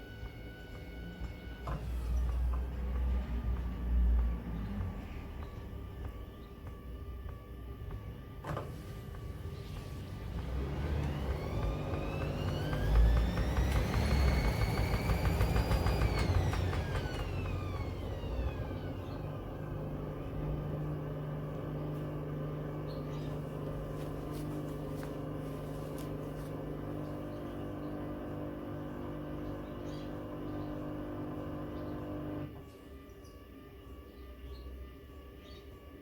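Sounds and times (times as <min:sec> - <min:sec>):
washing machine motor whining: 0:00.0 - 0:33.1
low hum: 0:00.0 - 0:36.0
drum rumbling: 0:01.2 - 0:29.4.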